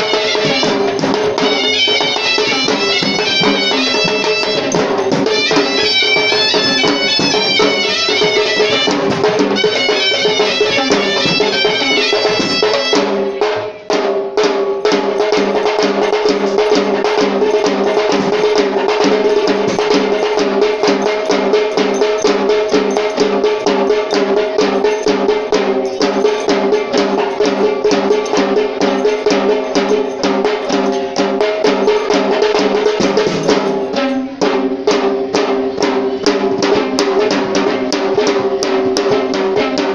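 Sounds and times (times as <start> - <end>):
shrill reed pipe melody: 0.0 - 13.4
rapid dense drumming: 0.0 - 39.9.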